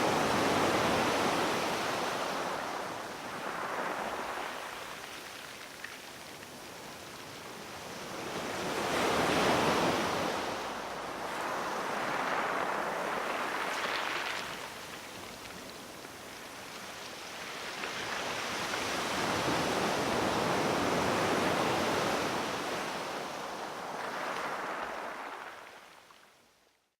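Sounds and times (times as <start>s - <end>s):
waves breaking on shore: 0.0s - 26.2s.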